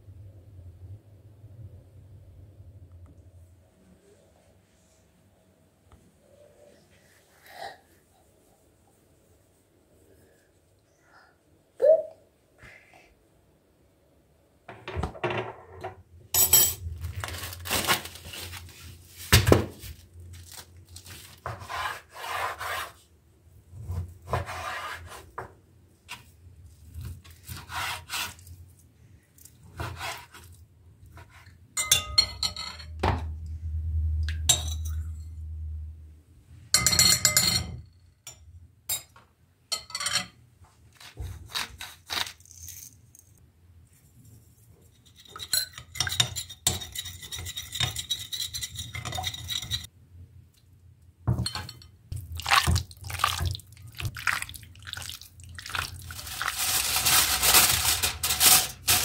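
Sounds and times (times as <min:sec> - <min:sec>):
utensils scraping bowls and boards: 0:27.5 - 0:28.5, 0:45.0 - 0:49.9
dishes clinking: 0:31.8 - 0:33.0, 0:36.8 - 0:40.4, 0:51.3 - 0:52.0.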